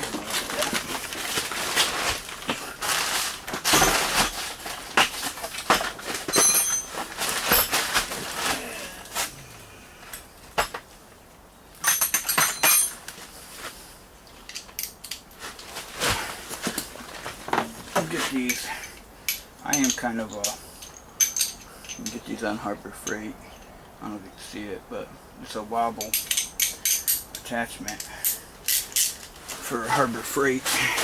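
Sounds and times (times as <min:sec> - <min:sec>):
metal hand tools clinking: 0:06.3 - 0:07.9, 0:11.8 - 0:13.1, 0:18.3 - 0:23.8, 0:25.8 - 0:31.0.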